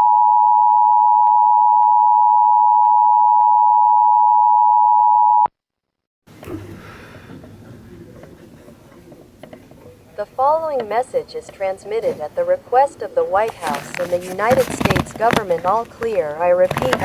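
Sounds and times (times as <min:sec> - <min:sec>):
two-tone alarm: 0:00.0 - 0:05.5.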